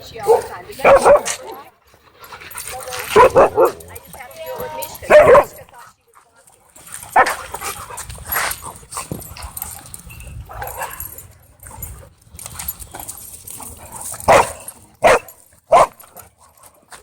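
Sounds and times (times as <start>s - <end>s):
dogs barking: 0.2s - 1.4s, 3.2s - 3.9s, 5.0s - 5.6s, 7.2s - 7.4s, 14.2s - 16.2s.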